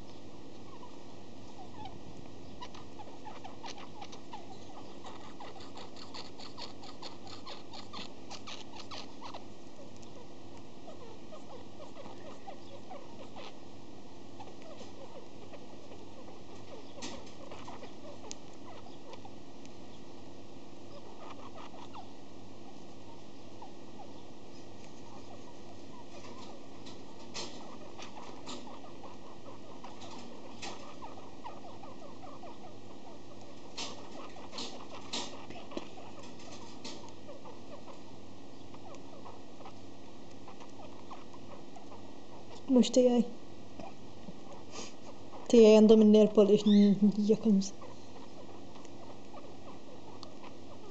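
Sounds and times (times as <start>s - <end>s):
faint steady hum: 0.0s - 50.9s
budgie squeaks and clicks: 2.6s - 13.6s, 14.4s - 19.4s, 24.8s - 38.0s, 38.6s - 42.7s, 47.7s - 50.9s.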